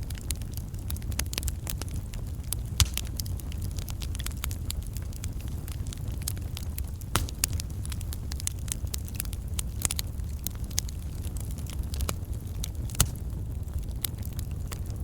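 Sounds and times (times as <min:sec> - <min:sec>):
logs crackling and popping: 0:00.0 - 0:15.0
low rumble of flames: 0:00.0 - 0:15.0.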